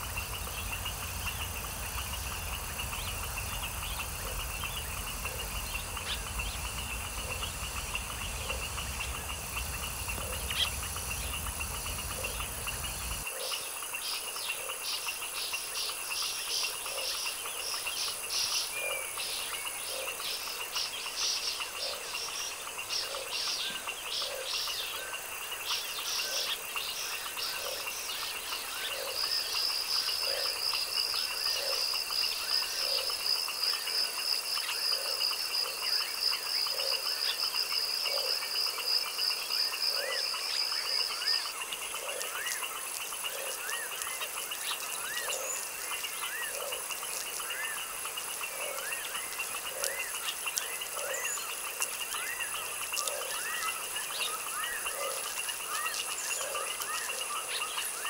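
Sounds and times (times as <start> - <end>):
frogs croaking: 0.0 - 58.0
high insect chorus: 0.0 - 58.0.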